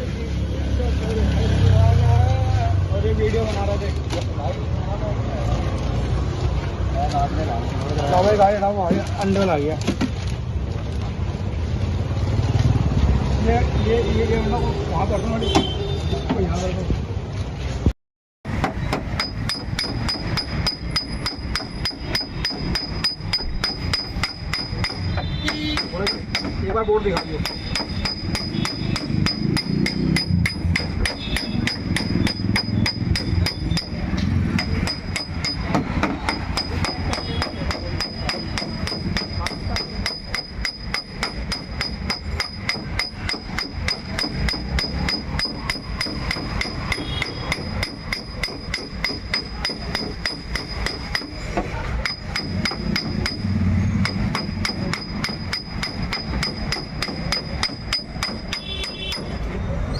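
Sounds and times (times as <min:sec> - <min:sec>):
small hammer tapping sheet metal: 0:18.5 - 0:59.5.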